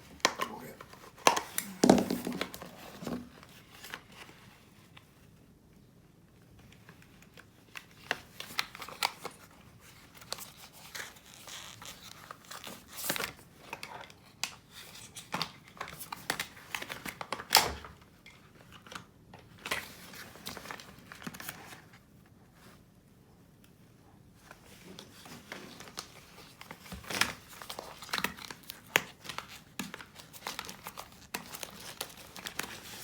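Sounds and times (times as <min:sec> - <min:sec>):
crinkling rustles: 0:06.4 - 0:23.8, 0:24.4 - 0:33.0.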